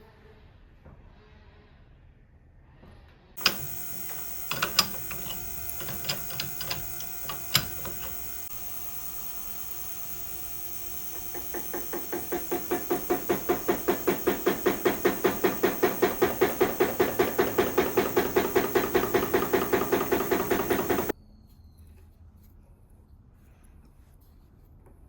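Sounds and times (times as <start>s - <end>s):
machine running: 3.4s - 21.1s
regular mechanical knock: 3.4s - 21.1s.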